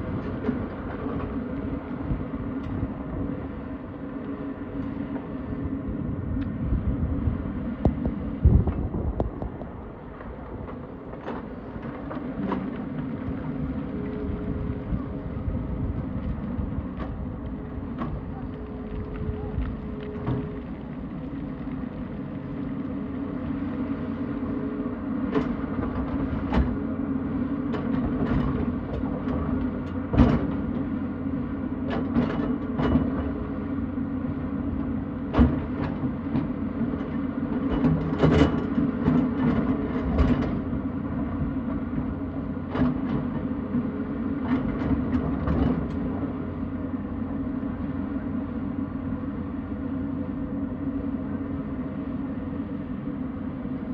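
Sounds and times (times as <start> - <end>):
excavator diesel engine running: 0.0 - 53.9.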